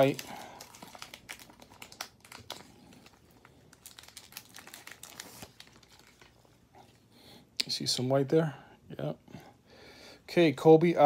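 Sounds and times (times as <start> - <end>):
wrapper crinkling: 0.0 - 7.0.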